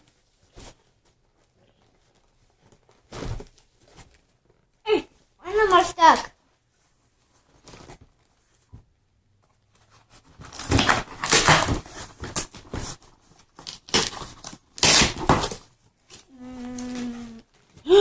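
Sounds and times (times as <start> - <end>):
wrapping paper tearing and crinkling: 5.5 - 6.2, 10.4 - 12.6, 13.4 - 17.8
humming vocal sound: 16.3 - 18.0.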